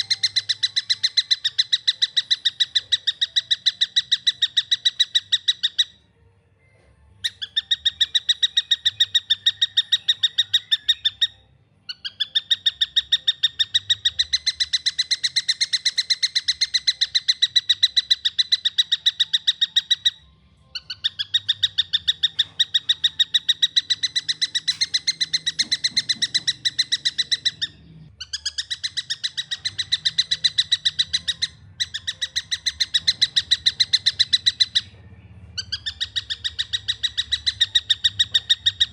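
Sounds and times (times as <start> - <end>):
kingfisher calling: 20.8 - 34.9.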